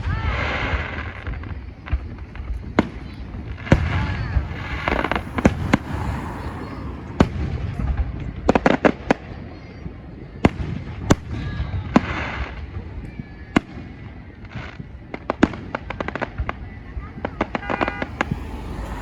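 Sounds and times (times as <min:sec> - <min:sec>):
fireworks bangs and pops: 0:00.0 - 0:19.0.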